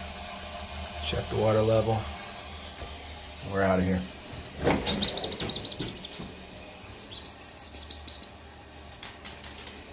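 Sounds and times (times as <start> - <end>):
bird chirping: 4.7 - 8.5.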